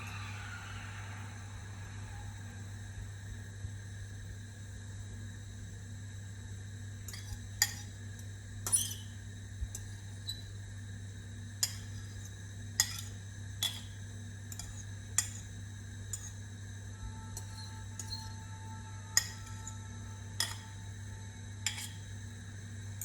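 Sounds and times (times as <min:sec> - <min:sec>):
steady low hum: 0:00.0 - 0:23.0
metal utensil clinking on dishes: 0:07.1 - 0:07.9, 0:11.6 - 0:12.2, 0:12.8 - 0:15.5, 0:17.4 - 0:18.4, 0:19.2 - 0:19.8, 0:20.4 - 0:20.8, 0:21.6 - 0:22.0.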